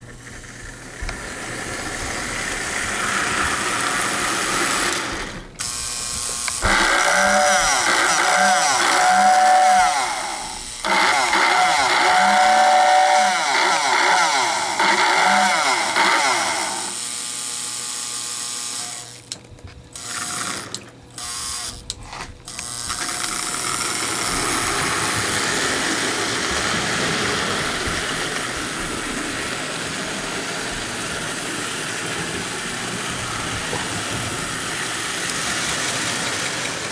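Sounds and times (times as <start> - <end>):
toy train motor whirring: 0.0 - 36.9
toy train whistle blasts: 6.6 - 17.0
wheels clattering on track: 23.6 - 36.9.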